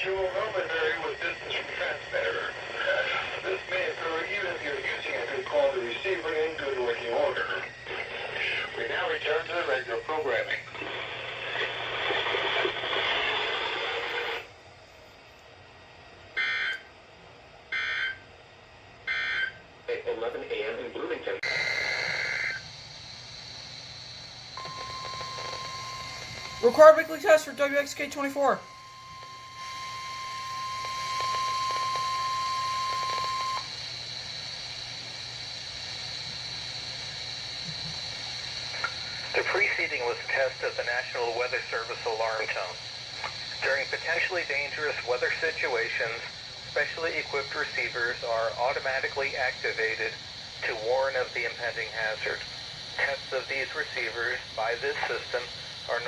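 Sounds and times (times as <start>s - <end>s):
radio hiss and static: 0.0s - 14.5s, 19.9s - 56.0s
buzzy two-tone data bursts: 21.4s - 33.7s
high warning alarm tone: 21.4s - 37.6s, 38.3s - 56.0s
steady hiss: 43.4s - 56.0s.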